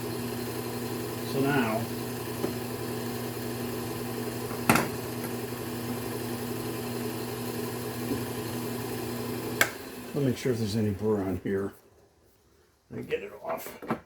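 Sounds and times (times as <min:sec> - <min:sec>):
belt sharpener motor humming: 0:00.0 - 0:11.0.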